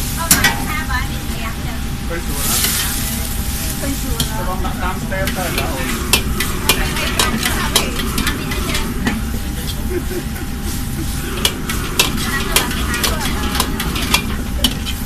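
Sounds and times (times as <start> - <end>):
food sizzling in a pan: 0.0 - 15.0
metal spatula scraping a pan: 2.4 - 3.3, 5.2 - 9.8, 10.5 - 15.0.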